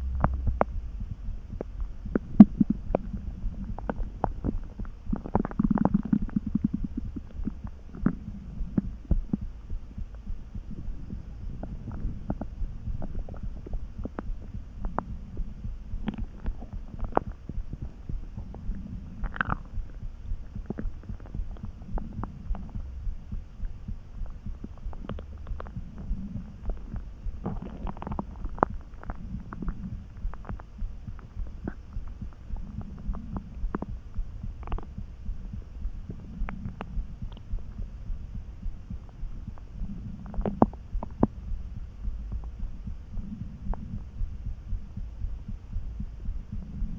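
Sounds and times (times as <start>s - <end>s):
stomach rumbling: 0.0s - 46.9s
stomach gurgles and squeaks: 1.6s - 9.4s, 16.0s - 17.4s, 18.4s - 19.8s, 24.7s - 34.0s, 34.6s - 35.0s, 39.8s - 41.4s.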